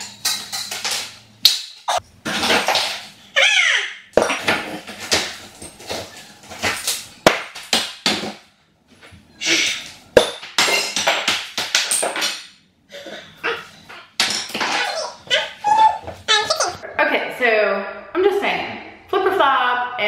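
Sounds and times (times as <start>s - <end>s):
tile scraping and cracking: 4.2s - 8.4s.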